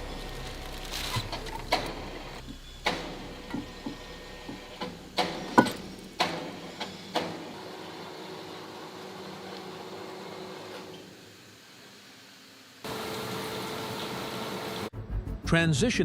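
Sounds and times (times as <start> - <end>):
steady low hum: 0.0 - 7.2.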